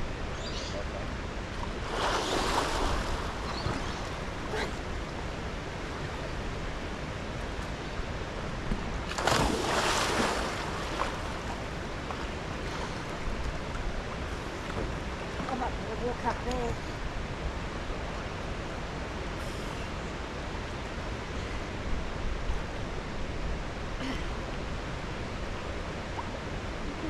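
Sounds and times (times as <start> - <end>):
water rushing: 1.1 - 27.0.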